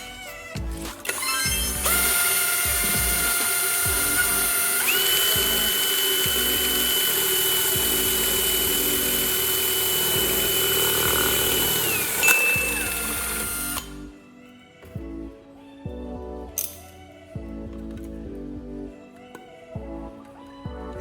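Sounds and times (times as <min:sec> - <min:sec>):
background music: 0:00.0 - 0:21.0
power tool motor whining: 0:01.1 - 0:14.1.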